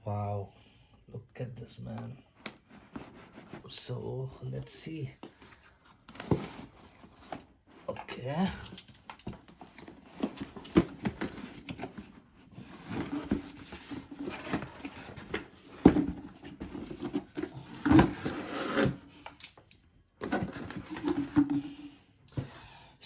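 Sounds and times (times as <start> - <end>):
packaging rustling: 8.7 - 19.0.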